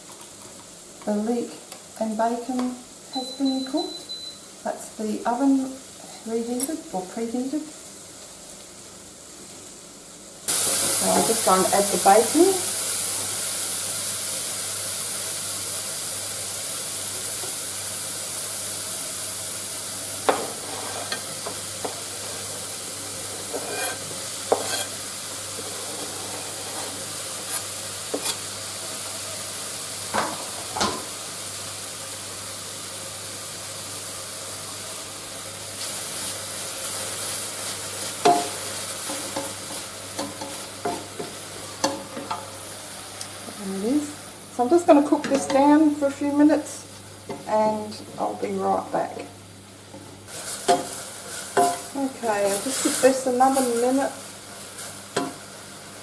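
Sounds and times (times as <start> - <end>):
food sizzling in a frying pan: 0.0 - 56.0
utensil knocking and scraping pan: 23.4 - 25.0.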